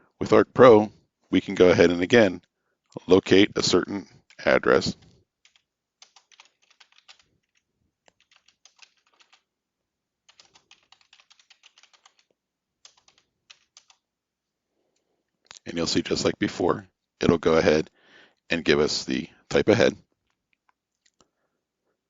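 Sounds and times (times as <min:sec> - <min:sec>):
faint keyboard typing: 0:02.4 - 0:09.5, 0:10.2 - 0:14.1, 0:20.0 - 0:21.4.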